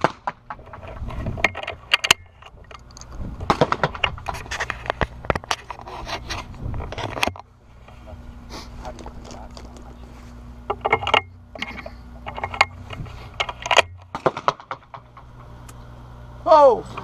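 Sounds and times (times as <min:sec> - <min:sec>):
sharp clicks and light rattles: 0:00.2 - 0:07.5, 0:10.7 - 0:15.8
wind buffeting microphone: 0:00.6 - 0:01.9, 0:02.5 - 0:05.4, 0:06.0 - 0:07.2.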